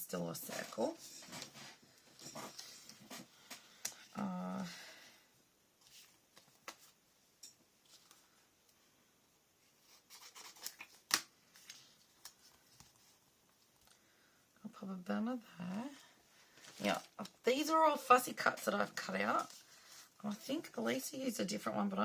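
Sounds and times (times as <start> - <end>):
paper rustling: 5.8 - 7.0, 9.7 - 14.0.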